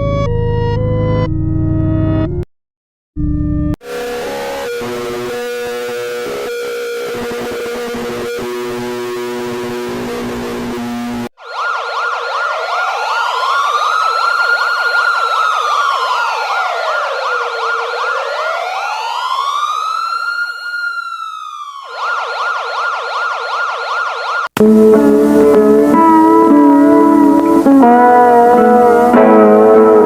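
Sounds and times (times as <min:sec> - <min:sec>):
music: 0:00.0 - 0:02.4, 0:24.6 - 0:30.0
siren wailing: 0:03.9 - 0:30.0
emergency alert yelping warble: 0:11.4 - 0:30.0.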